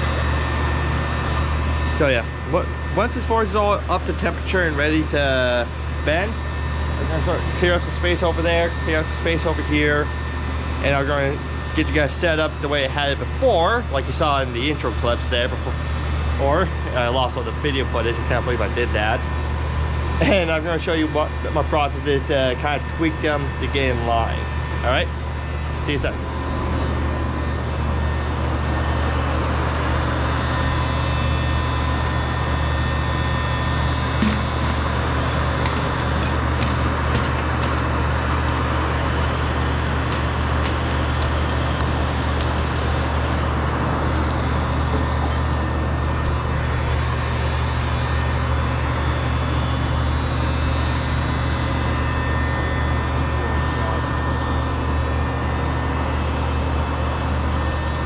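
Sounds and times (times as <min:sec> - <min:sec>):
forge machine hum: 0:00.0 - 0:50.8
light crackles: 0:37.2 - 0:43.5.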